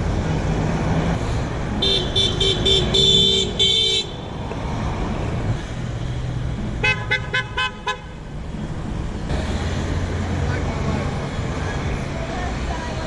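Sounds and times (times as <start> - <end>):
road traffic rumble: 0.0 - 13.0
car horn toots: 1.8 - 4.2, 6.8 - 8.2.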